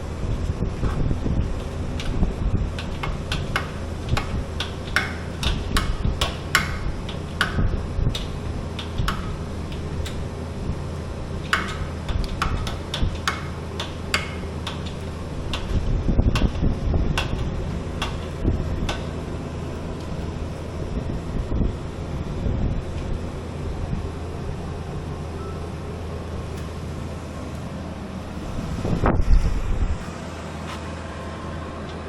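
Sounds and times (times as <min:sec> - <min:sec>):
low mechanical hum: 0:00.0 - 0:32.0
metallic clicks and taps: 0:11.5 - 0:15.8.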